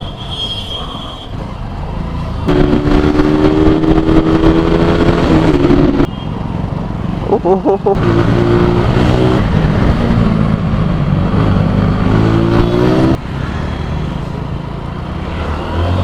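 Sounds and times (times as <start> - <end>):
motorcycle engine revving: 2.4 - 6.1, 7.9 - 13.2.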